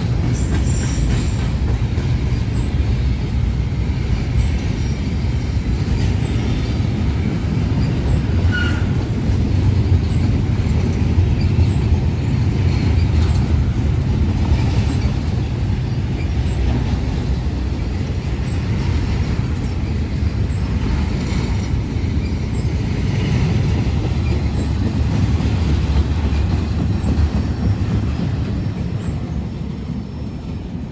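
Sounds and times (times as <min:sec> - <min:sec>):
freight train wheels rumbling on rail: 0:00.0 - 0:30.9
faint wheel squeal: 0:08.5 - 0:08.9.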